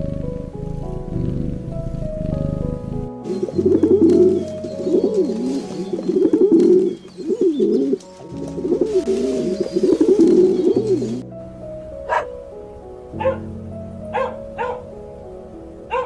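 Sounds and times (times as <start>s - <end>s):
bird cooing: 0.0s - 11.2s
soft background music: 0.0s - 16.0s.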